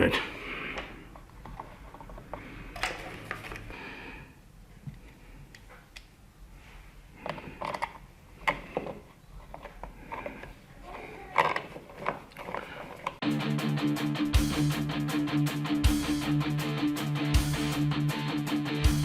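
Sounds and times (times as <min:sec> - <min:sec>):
plastic and metal clicks and scrapes: 0:07.2 - 0:13.2
guitar music: 0:13.2 - 0:19.0.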